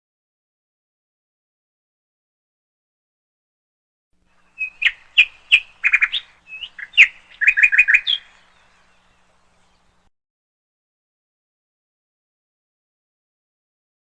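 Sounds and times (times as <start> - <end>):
bird chirping: 4.3 - 10.1.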